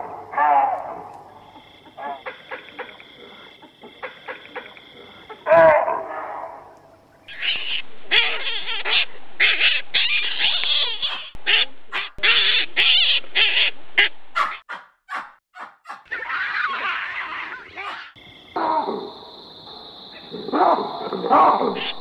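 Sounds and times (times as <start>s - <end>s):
short harsh animal calls: 7.3s - 16.0s.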